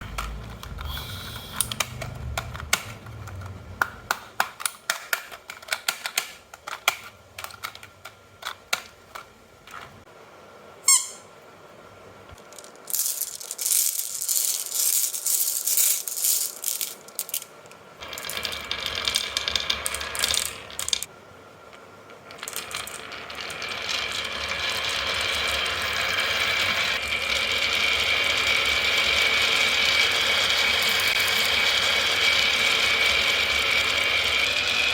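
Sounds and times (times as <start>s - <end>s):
marbles rolling down wooden run: 12.4s - 17.4s, 18.0s - 21.1s, 22.3s - 27.0s.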